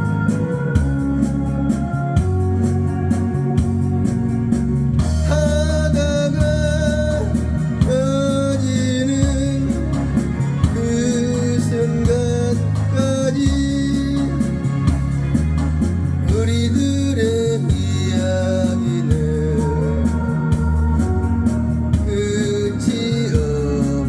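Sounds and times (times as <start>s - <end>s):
electronic organ music with beat: 0.0s - 24.0s
wavering held melody line: 0.0s - 24.0s.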